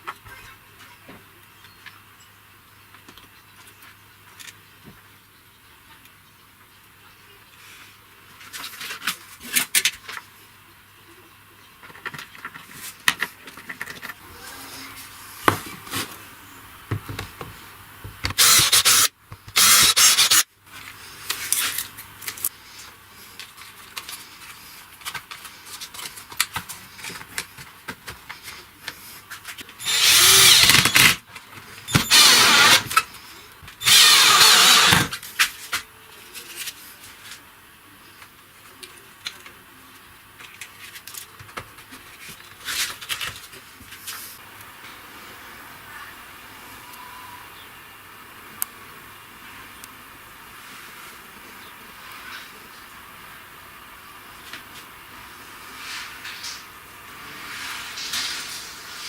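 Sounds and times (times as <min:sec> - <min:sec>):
handheld power tool running: 0:18.3 - 0:20.4, 0:29.8 - 0:31.2, 0:31.9 - 0:33.0, 0:33.8 - 0:35.1.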